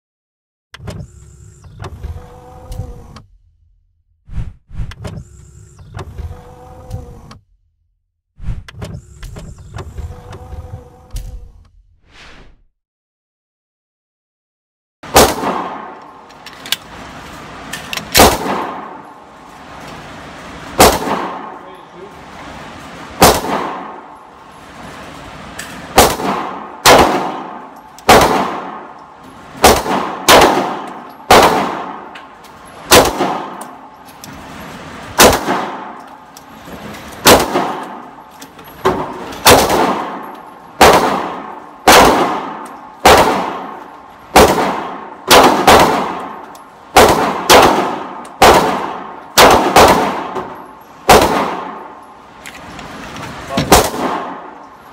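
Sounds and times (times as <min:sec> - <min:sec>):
pistol shots with echo: 0:15.1 - 0:16.3, 0:18.0 - 0:19.2, 0:20.7 - 0:21.8, 0:23.2 - 0:24.3, 0:25.7 - 0:34.0, 0:35.1 - 0:36.4, 0:37.2 - 0:38.3, 0:38.9 - 0:52.1, 0:53.6 - 0:54.7.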